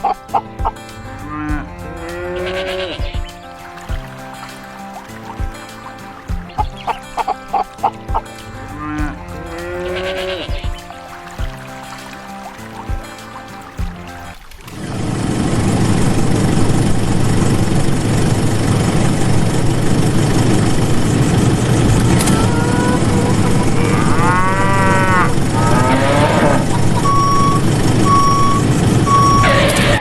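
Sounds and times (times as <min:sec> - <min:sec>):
cow mooing: 0:01.2 - 0:03.2, 0:08.8 - 0:10.6, 0:22.2 - 0:27.4
vehicle engine running: 0:14.8 - 0:30.0
reversing alarm beeping: 0:26.9 - 0:30.0.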